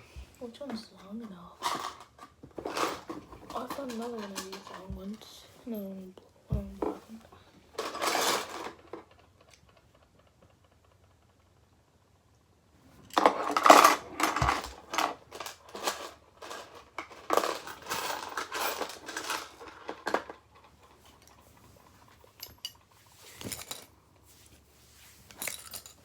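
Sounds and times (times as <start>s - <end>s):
small metal parts clinking: 7.8s - 9.7s, 13.1s - 21.5s, 22.1s - 24.0s, 25.3s - 26.0s.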